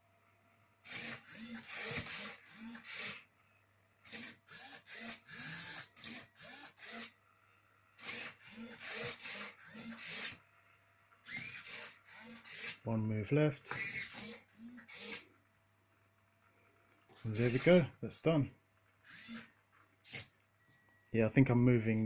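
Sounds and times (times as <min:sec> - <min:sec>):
servos whining: 0:00.8 - 0:03.3, 0:04.0 - 0:07.3, 0:07.9 - 0:10.5, 0:11.1 - 0:15.5, 0:17.0 - 0:20.4.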